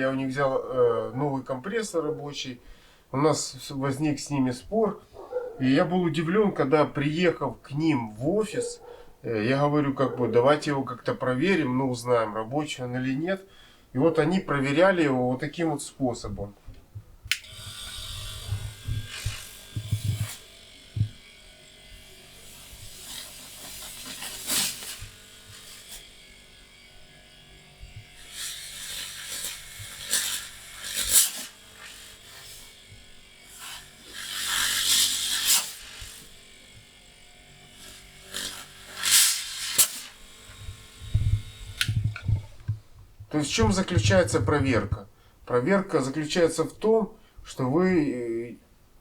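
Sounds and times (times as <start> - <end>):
air hissing bursts: 17.4 - 21.2, 22.6 - 26.0, 29.8 - 32.7, 33.6 - 36.3, 37.8 - 42.4.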